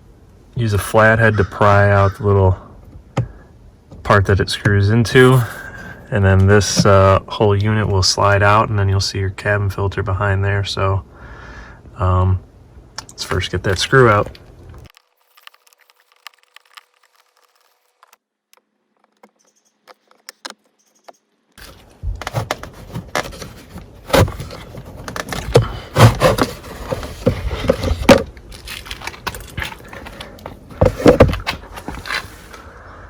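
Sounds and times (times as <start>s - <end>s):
plastic scraping and rattling: 21.6s - 32.6s.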